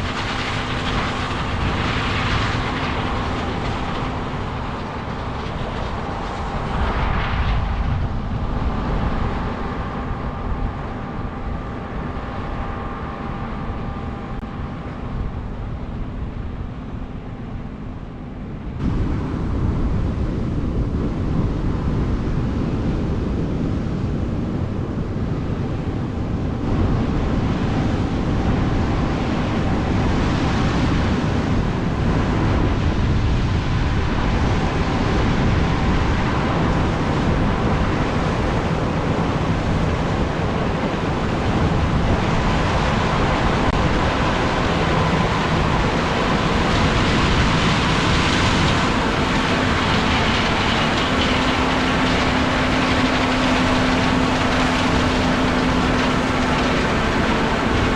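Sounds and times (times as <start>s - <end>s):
heavy farm machinery engine running: 0.0s - 17.8s, 24.1s - 57.9s
wind noise on microphone: 0.0s - 57.9s.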